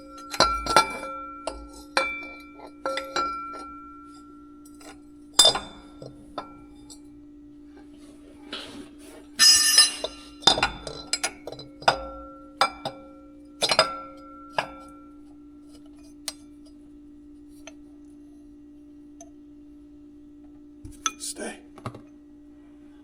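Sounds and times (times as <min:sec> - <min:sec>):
steady low hum: 0:00.0 - 0:23.0
metal hand tools clinking: 0:09.4 - 0:12.0.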